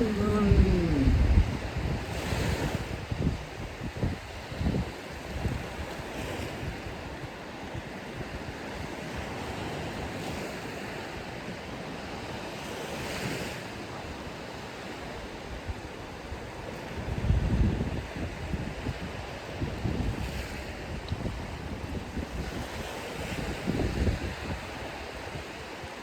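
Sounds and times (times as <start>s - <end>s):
wind buffeting microphone: 0.0s - 5.7s
ocean surf on beach: 0.0s - 26.0s.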